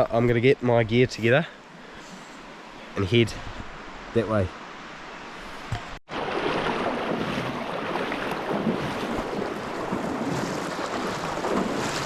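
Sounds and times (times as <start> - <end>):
river water rushing: 6.1 - 12.0.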